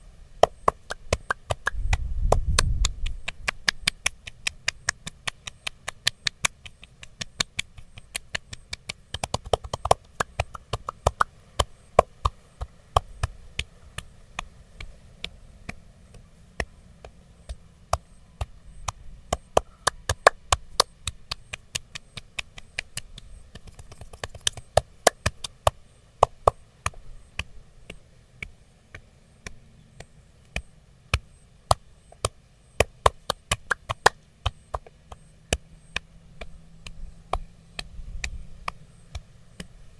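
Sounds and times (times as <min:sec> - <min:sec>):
percussive massage taps: 0:00.4 - 0:39.9.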